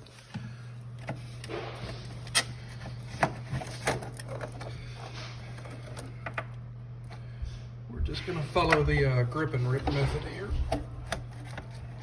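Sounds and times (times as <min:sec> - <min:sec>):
clicks and knocks on refrigerator parts: 0:00.0 - 0:06.6
steady low hum: 0:00.0 - 0:12.0.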